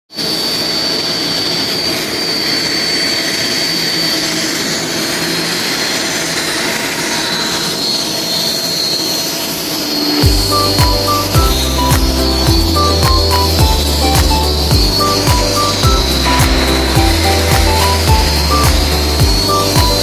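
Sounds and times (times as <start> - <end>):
thin high whine: 0.2 - 20.0
loud steady hissing: 0.4 - 20.0
music with bass line: 10.2 - 20.0.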